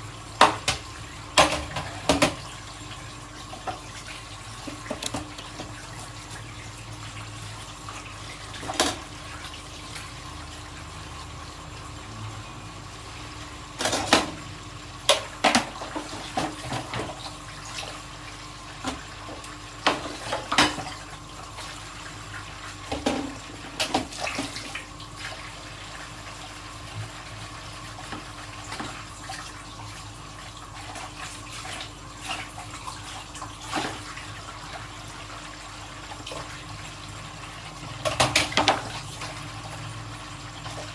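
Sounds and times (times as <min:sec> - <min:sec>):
tap running into sink: 0:00.4 - 0:02.4, 0:04.6 - 0:05.8.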